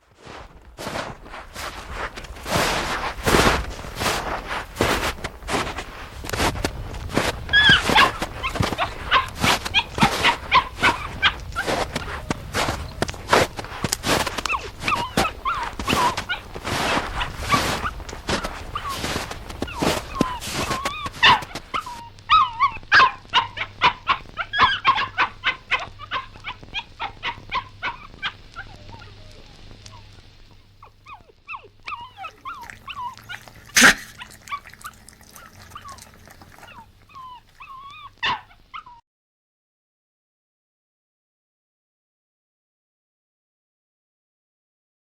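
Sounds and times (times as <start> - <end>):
puppy whimpering and yelping: 14.5 - 18.0, 18.7 - 30.0, 31.0 - 39.0.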